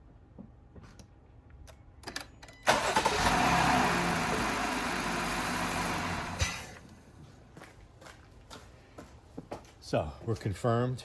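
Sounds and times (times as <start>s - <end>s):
car engine starting and idling: 2.5s - 7.2s.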